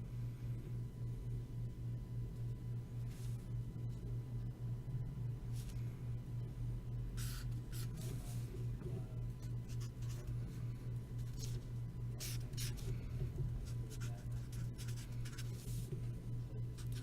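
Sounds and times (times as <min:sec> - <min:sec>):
steady low hum: 0:00.0 - 0:17.0
pen scratching on paper: 0:13.6 - 0:15.8.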